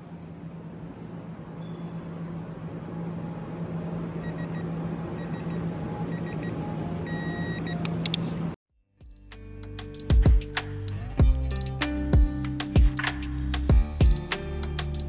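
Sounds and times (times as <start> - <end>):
steady low hum: 0.0 - 15.0
short electronic beeps: 4.2 - 8.0.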